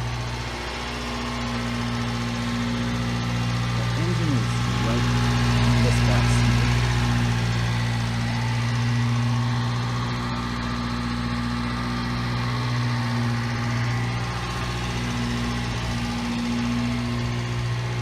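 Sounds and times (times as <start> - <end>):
car engine idling: 0.0 - 18.0.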